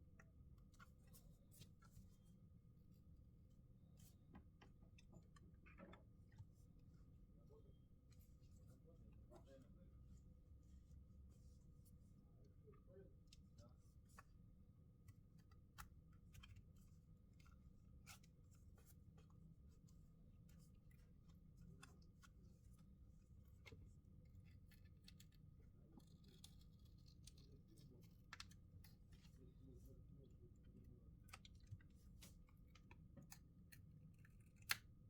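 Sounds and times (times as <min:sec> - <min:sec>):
small plastic clicks and scrapes: 0:23.4 - 0:29.4.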